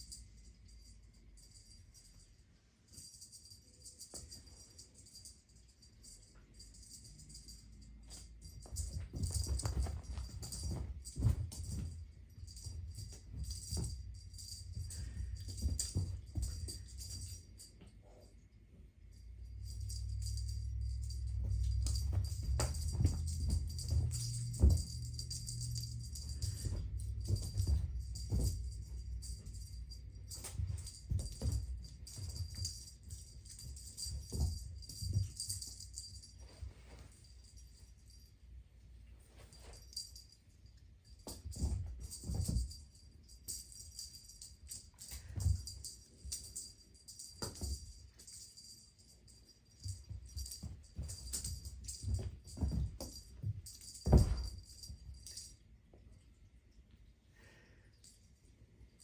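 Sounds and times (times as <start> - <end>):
cat toy rattling and jingling: 2.9 - 18.2, 19.4 - 38.2, 41.0 - 55.6
dull thumps: 21.2 - 35.6, 49.8 - 55.4.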